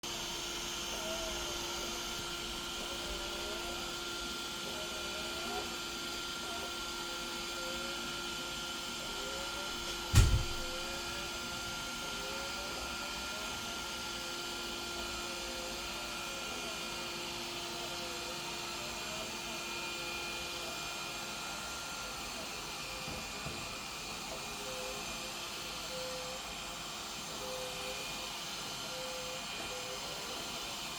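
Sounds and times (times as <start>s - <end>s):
suction fan motor whirring: 0.1s - 17.1s.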